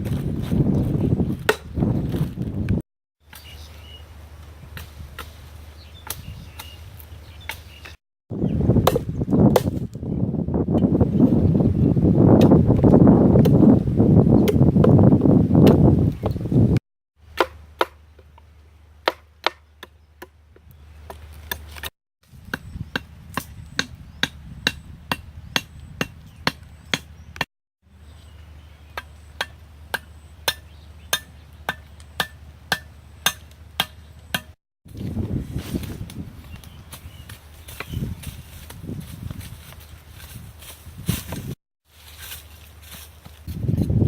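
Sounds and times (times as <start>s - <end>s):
blade chopping on wood: 1.4s - 1.7s, 8.8s - 9.9s, 17.3s - 18.0s, 19.0s - 27.1s, 29.0s - 34.6s.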